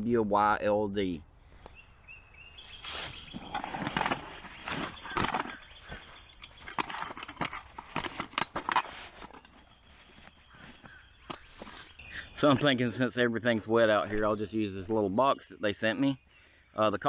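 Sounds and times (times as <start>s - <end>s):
gear rustling and crinkling: 2.7s - 12.1s.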